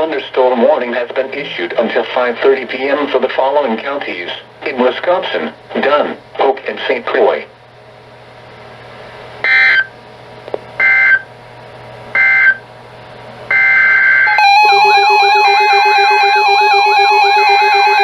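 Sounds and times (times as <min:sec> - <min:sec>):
pulsing electronic alert tones: 0:13.5 - 0:18.0.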